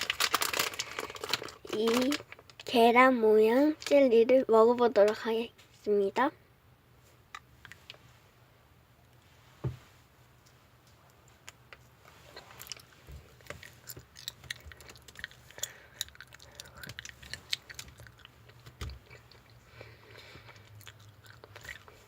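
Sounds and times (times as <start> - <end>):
chewing gummy with wet clicks: 12.6 - 22.0.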